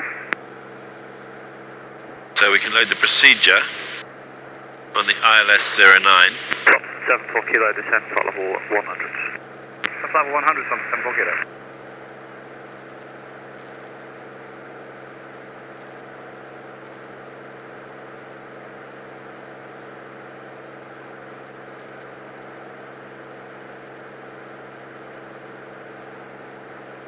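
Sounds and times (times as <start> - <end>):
airplane engine drone: 0.0 - 11.5.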